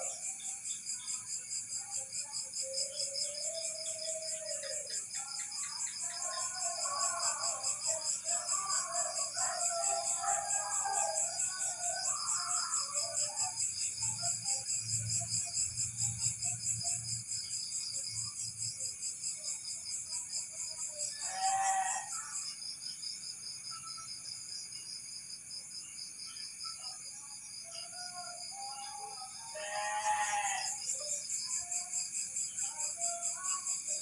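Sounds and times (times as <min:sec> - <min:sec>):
crickets chirping: 0:00.0 - 0:34.0
animal call: 0:21.1 - 0:22.4, 0:28.8 - 0:30.8.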